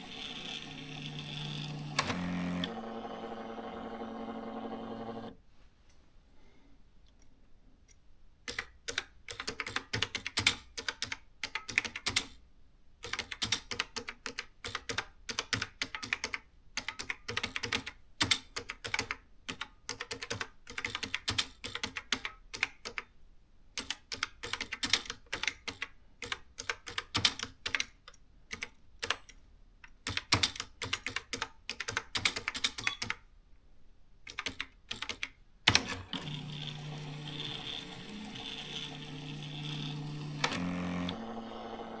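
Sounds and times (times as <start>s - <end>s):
mechanical whir: 0.0s - 5.4s, 35.7s - 42.0s
typewriter keys clicking: 8.5s - 12.4s, 30.0s - 33.2s, 34.3s - 36.0s
loud mechanical click: 35.7s - 42.0s.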